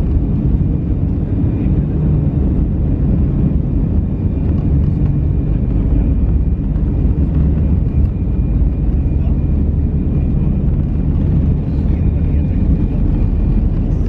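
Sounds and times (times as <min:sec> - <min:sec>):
jet engine rumble in cabin: 0:00.0 - 0:14.0.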